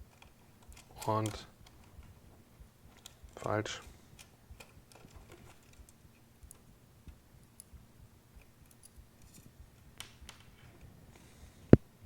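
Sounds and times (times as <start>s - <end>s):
small metal parts clicking: 8.4s - 9.5s.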